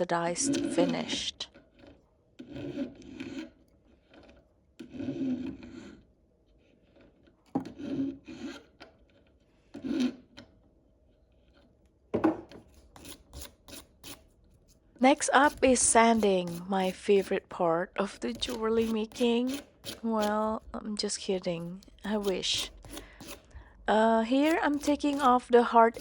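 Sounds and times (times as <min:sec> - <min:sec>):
hand file rasping on metal: 0:02.4 - 0:03.6, 0:07.8 - 0:08.8, 0:12.7 - 0:26.0.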